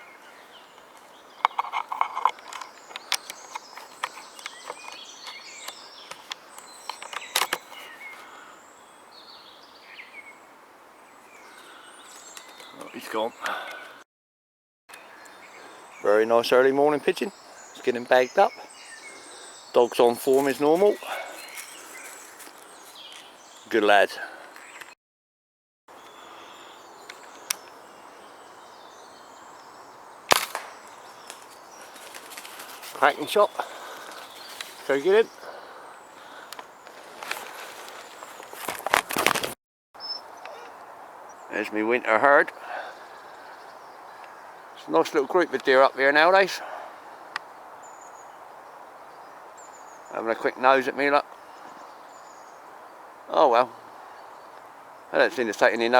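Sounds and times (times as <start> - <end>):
small birds chirping: 0.0 - 14.0, 14.9 - 25.0, 25.9 - 55.9
air rifle shot crack: 30.3 - 30.9.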